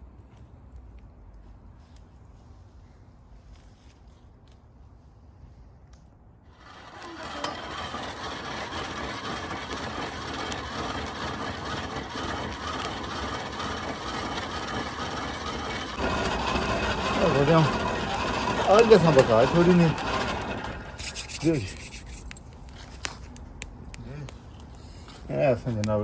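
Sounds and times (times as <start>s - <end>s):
small blower fan running: 6.5s - 23.2s.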